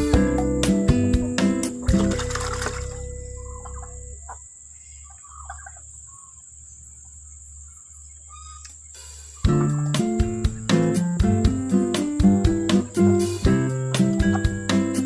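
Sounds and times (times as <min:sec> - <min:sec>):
background music: 0:00.0 - 0:04.4, 0:09.4 - 0:15.0.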